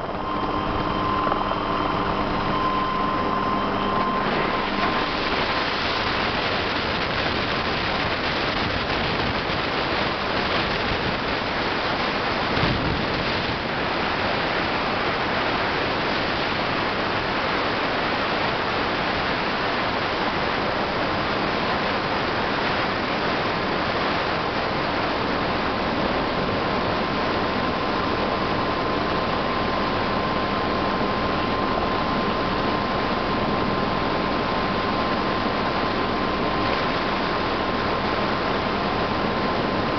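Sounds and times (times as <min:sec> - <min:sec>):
helicopter rotor and engine: 0:00.0 - 0:08.4
high whine: 0:00.0 - 0:39.9.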